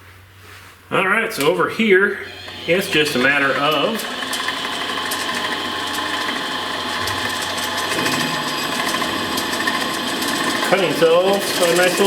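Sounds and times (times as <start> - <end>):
lathe machine whine: 2.2 - 12.0
fast fine ticking: 2.5 - 12.0.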